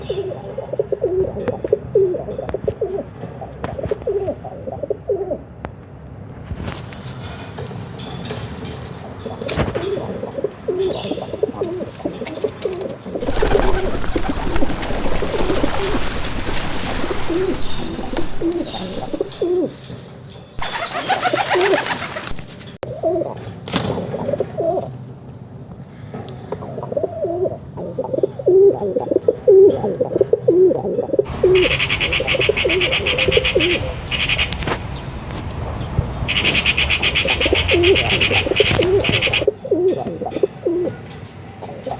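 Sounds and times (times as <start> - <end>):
pigeons cooing: 9.8 - 19.8, 20.6 - 22.5, 28.1 - 35.1, 36.3 - 41.0.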